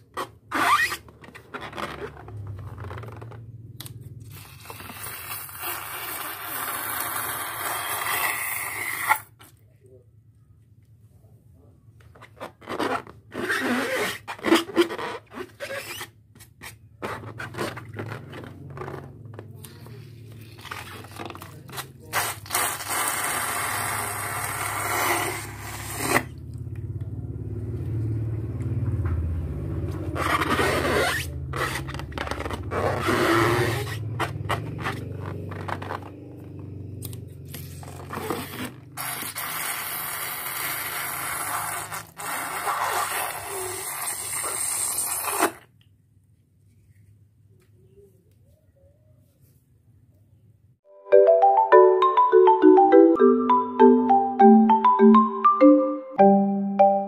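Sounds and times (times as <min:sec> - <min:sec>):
balloons rubbing and squeaking: 0:00.0 - 0:09.5, 0:12.0 - 0:26.5, 0:29.9 - 0:36.6, 0:37.4 - 0:45.8.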